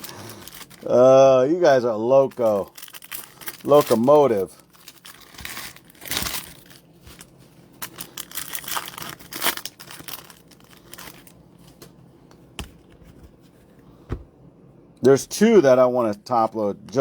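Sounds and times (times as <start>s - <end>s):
wrappers crinkling and tearing: 0.0s - 1.4s, 2.2s - 11.8s.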